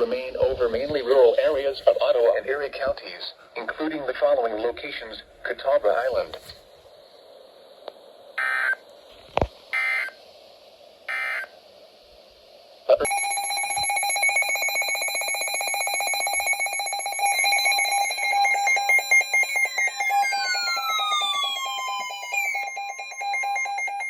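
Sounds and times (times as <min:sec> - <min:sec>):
digital data tone bursts: 0:08.4 - 0:08.8, 0:09.8 - 0:10.2, 0:11.1 - 0:11.6, 0:13.0 - 0:24.0
loud electronic alarm tone: 0:11.1 - 0:11.5, 0:13.0 - 0:24.0
falling tone sweeps: 0:19.9 - 0:23.2.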